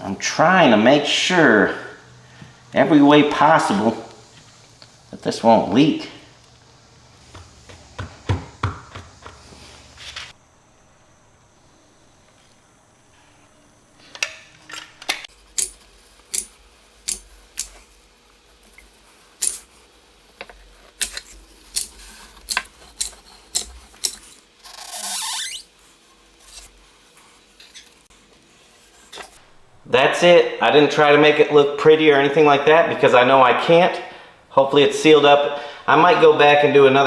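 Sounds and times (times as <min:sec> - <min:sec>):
sharp clicks and squeaks: 0:21.0 - 0:25.7.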